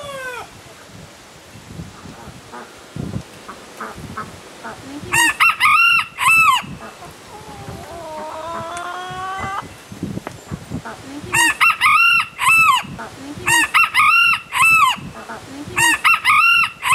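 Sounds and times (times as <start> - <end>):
rooster crowing: 5.1 - 6.8, 11.4 - 12.9, 15.8 - 16.9.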